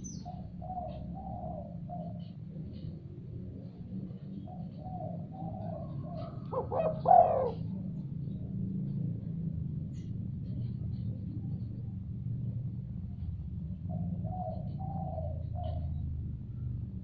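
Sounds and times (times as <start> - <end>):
dove cooing: 0.0 - 8.4, 13.7 - 16.3
steady low hum: 0.0 - 17.0.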